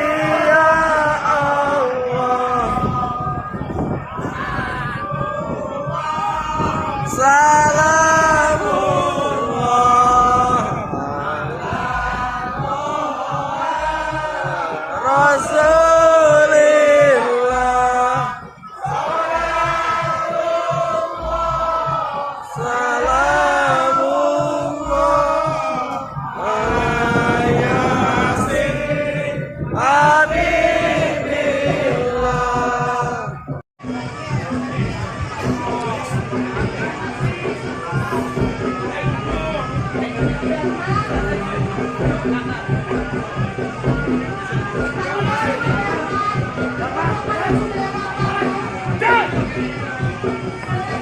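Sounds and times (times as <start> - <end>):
men chanting devotional song: 0.0 - 33.6
regular low beat: 0.0 - 51.0.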